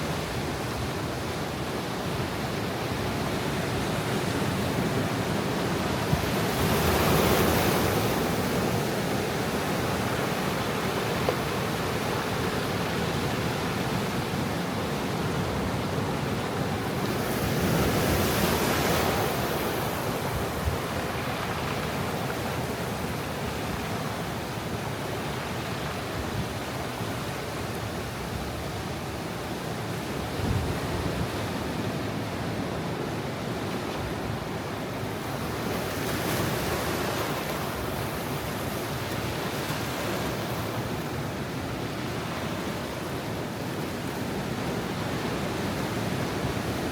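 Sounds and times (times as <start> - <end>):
surf washing onto rocks: 2.4 - 26.1.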